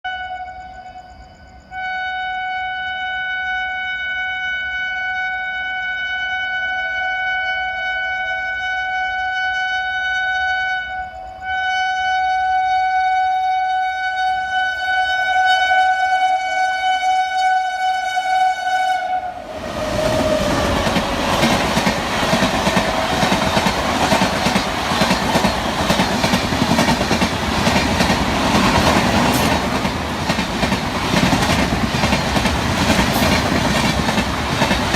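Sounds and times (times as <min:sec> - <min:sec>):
train horn blast: 0:00.0 - 0:25.5
train wheels rushing over track: 0:19.2 - 0:34.9.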